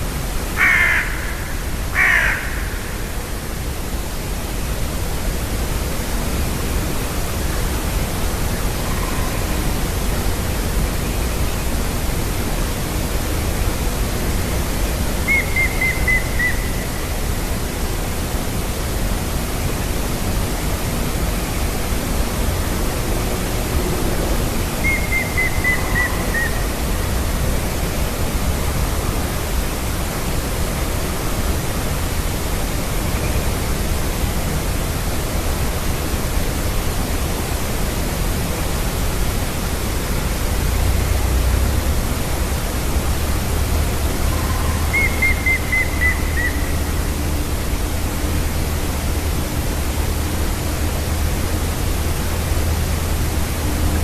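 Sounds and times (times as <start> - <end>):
steady rushing background noise: 0.0 - 54.0
woodpecker whistled call: 15.2 - 17.2, 24.8 - 26.8, 44.3 - 47.1.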